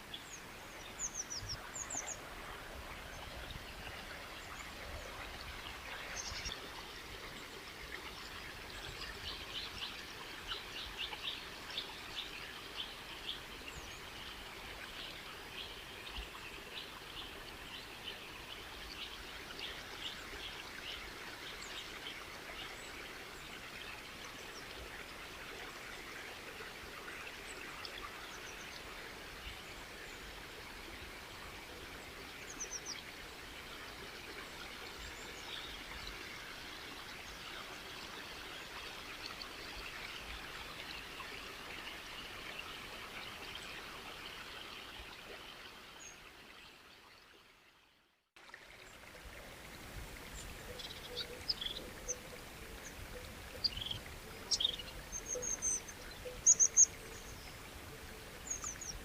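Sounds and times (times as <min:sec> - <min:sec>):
flowing water rushing: 0:00.0 - 0:47.7, 0:48.4 - 0:59.0
faint bird chirps: 0:50.3 - 0:57.6.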